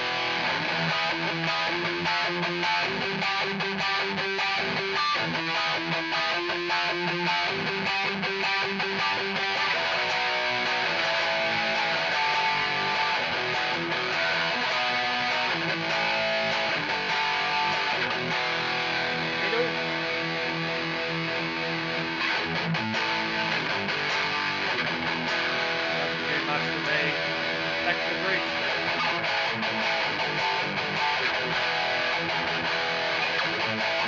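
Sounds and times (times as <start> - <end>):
distorted electric guitar riffs: 0.0 - 34.0.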